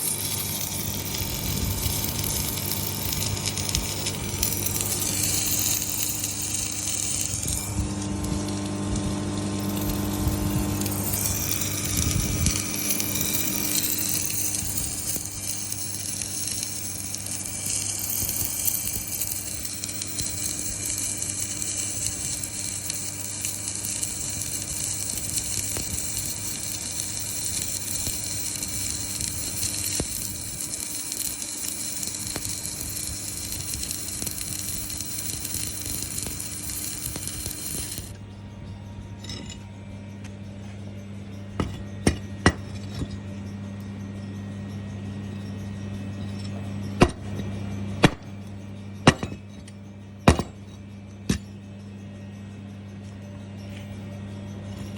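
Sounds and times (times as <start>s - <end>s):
welding arc crackling hiss: 0.0s - 38.2s
transformer hum: 0.0s - 54.9s.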